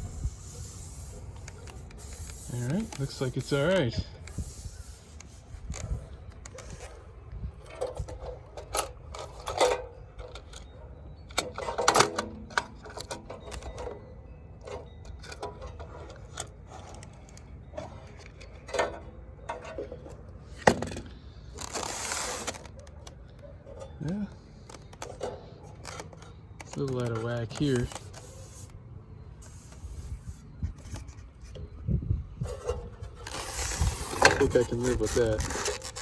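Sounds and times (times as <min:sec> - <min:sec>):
packing rustling and scraping: 0:14.7 - 0:28.8, 0:29.4 - 0:36.0.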